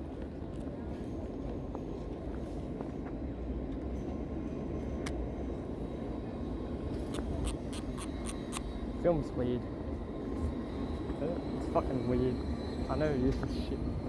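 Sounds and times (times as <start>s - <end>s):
city street traffic rumble: 0.0s - 14.0s
sharp clicks: 7.1s - 8.6s.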